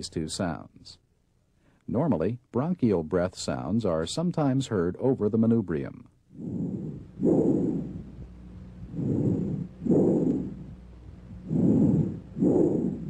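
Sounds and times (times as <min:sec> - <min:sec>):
breath sounds through stethoscope: 0:06.3 - 0:13.0.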